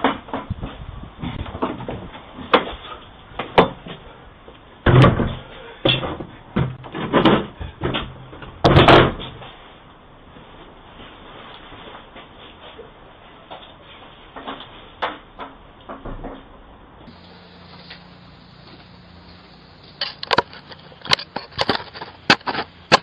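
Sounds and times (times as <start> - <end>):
heavy bangs on a door: 8.6 - 9.2.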